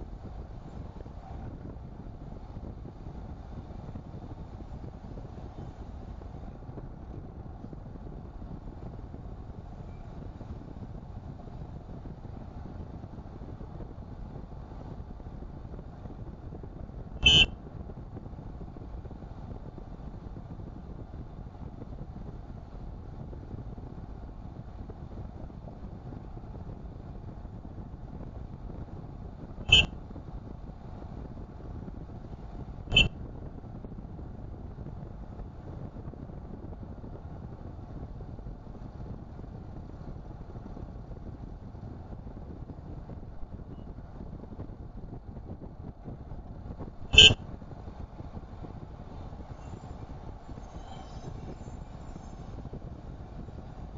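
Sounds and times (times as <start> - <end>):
car road and engine noise: 0.0 - 53.9
shrill electronic beep: 17.2 - 17.5, 29.7 - 29.9, 47.2 - 47.4.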